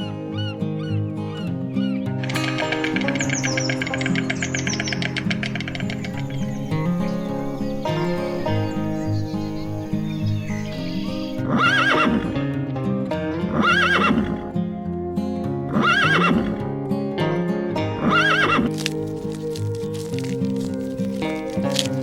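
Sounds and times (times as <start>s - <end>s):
background music: 0.0s - 22.0s
horse whinnying: 11.5s - 12.4s, 15.7s - 16.7s.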